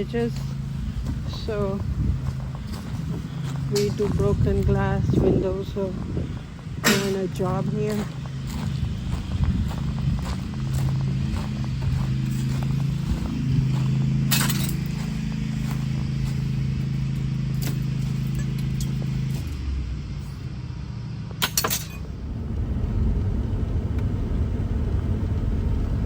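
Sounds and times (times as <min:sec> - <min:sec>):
low engine hum: 0:00.0 - 0:26.0
road noise rumbling: 0:00.0 - 0:26.0.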